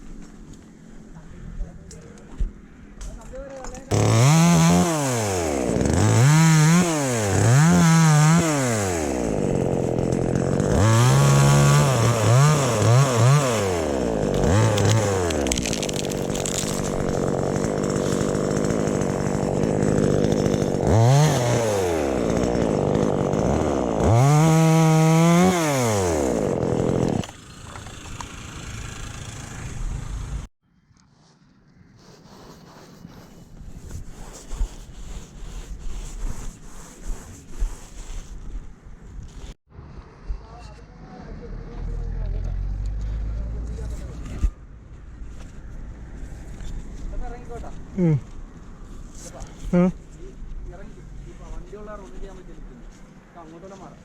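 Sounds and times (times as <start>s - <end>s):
chainsaw engine revving: 3.9s - 30.4s.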